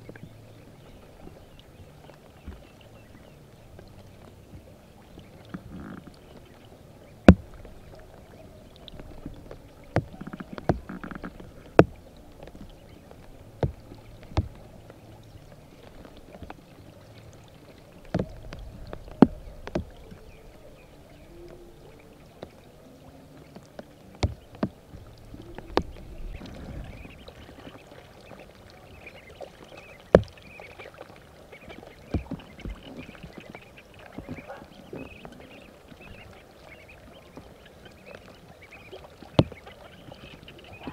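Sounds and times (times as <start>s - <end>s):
sharp knocks and clicks: 7.3s - 7.8s, 8.9s - 12.7s, 13.6s - 14.6s, 18.1s - 19.9s, 23.8s - 26.5s, 32.1s - 33.1s, 39.4s - 39.6s.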